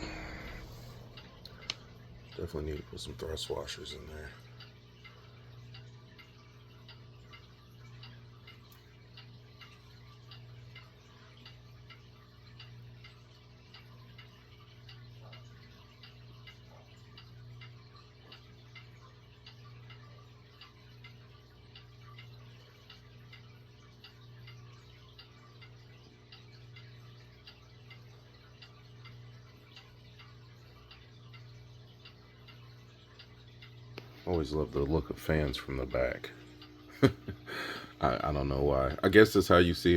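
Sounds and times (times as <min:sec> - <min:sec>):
box fan motor hum: 0:00.0 - 0:06.0
light ticking of fan: 0:00.0 - 0:39.9.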